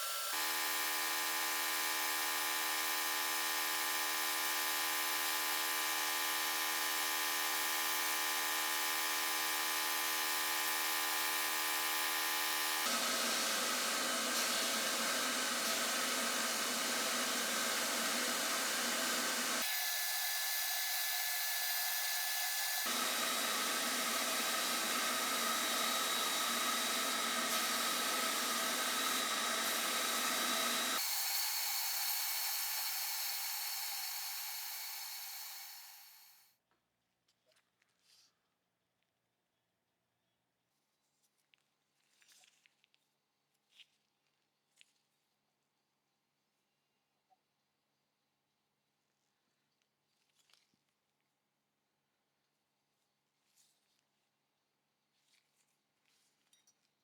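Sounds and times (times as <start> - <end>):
small electric power tool running: 0.0 - 36.4.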